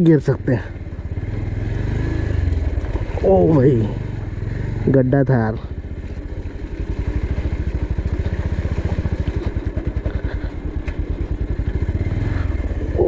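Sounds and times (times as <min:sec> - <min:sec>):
motorcycle engine at low revs: 0:00.0 - 0:13.0.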